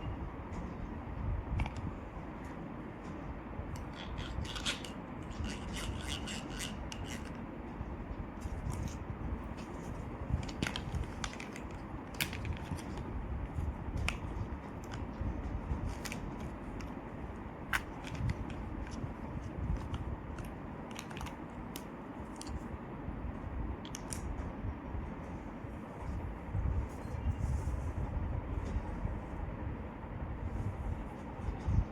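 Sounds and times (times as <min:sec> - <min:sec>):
plastic toy parts clicking: 0:03.8 - 0:07.3, 0:19.8 - 0:22.5.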